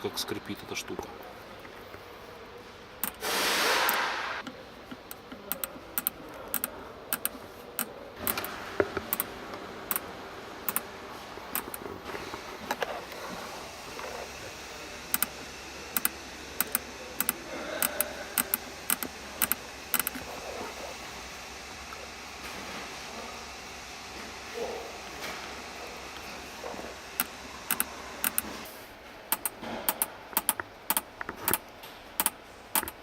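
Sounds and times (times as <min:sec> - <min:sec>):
sharp clicks: 0:03.0 - 0:07.4, 0:11.6 - 0:11.8, 0:15.1 - 0:15.3, 0:16.0 - 0:20.2, 0:27.2 - 0:28.5, 0:29.3 - 0:33.0.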